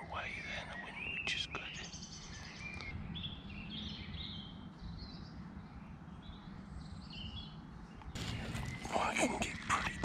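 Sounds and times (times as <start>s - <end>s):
birds chirping: 0.0s - 10.0s.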